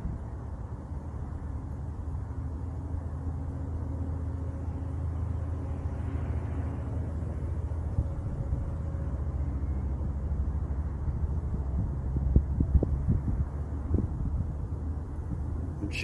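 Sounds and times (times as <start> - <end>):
strong wind buffeting microphone: 11.0 - 16.0.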